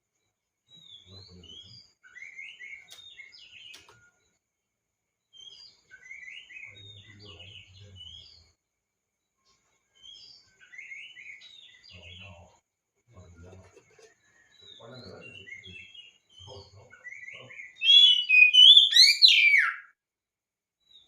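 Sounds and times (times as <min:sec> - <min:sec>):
bird singing whistled notes: 0:05.4 - 0:08.5, 0:14.6 - 0:20.0.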